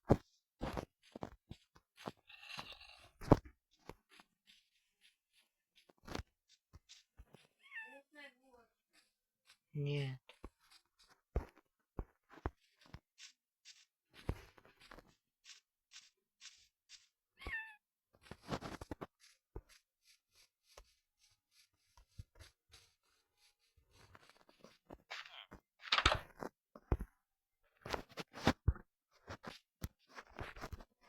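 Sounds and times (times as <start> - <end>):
cat meowing: 17.4 - 17.8.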